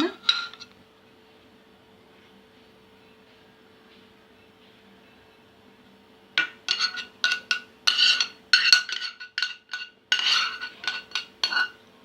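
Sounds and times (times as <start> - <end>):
metal spoon clinking on cookware: 0.0 - 0.7, 6.4 - 11.9.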